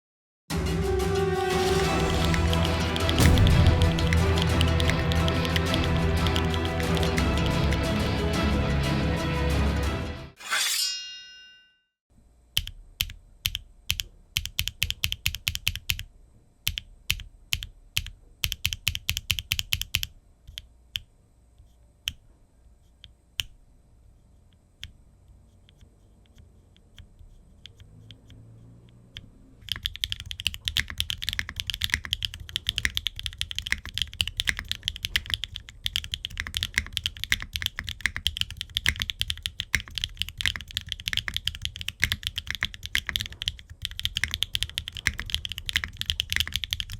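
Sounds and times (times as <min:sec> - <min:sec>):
typing on mechanical keyboard: 0:02.0 - 0:07.9, 0:12.6 - 0:16.1, 0:16.7 - 0:20.6, 0:25.7 - 0:46.9.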